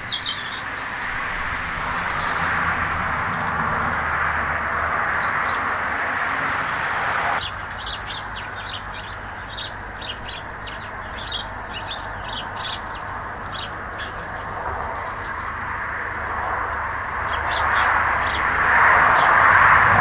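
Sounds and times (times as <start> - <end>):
steady rushing noise: 0.0 - 7.4
small birds twittering: 0.0 - 19.6.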